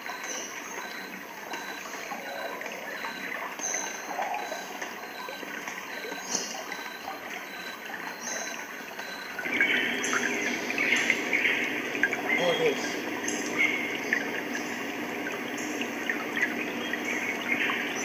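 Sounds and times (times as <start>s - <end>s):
flowing water hiss: 8.6s - 18.0s.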